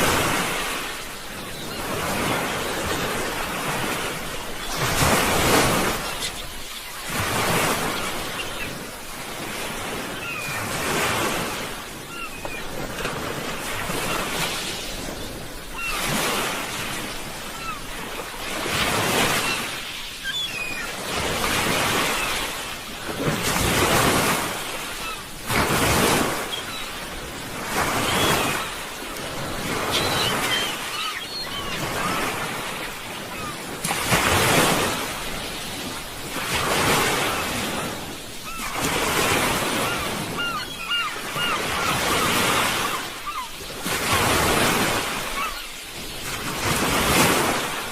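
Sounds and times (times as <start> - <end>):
sea waves breaking ashore: 0.0 - 47.9.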